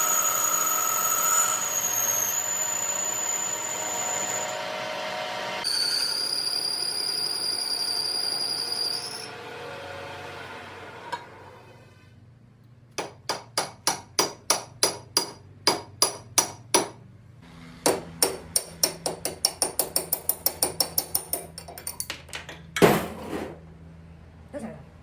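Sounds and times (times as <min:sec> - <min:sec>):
hammer striking metal: 0:13.0 - 0:17.0, 0:17.8 - 0:22.1.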